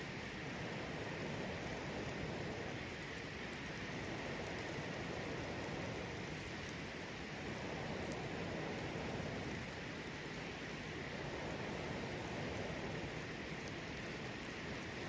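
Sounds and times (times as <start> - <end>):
faint crackles: 4.0 - 10.4, 11.3 - 15.0.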